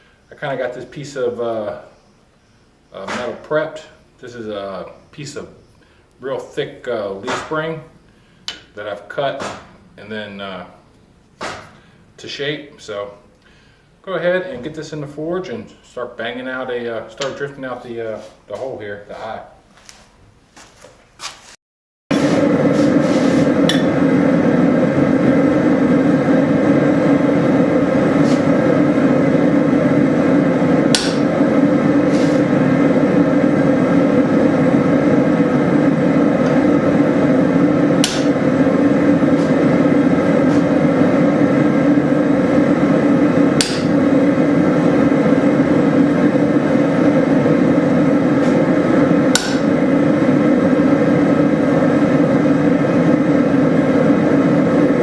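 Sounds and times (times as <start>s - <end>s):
hammering on hot steel: 30.9s - 31.3s, 38.0s - 38.5s, 43.6s - 44.1s, 49.3s - 49.8s.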